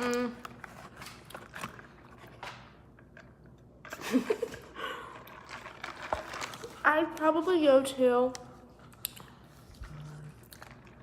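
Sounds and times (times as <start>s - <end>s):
person chewing food: 8.8s - 11.0s.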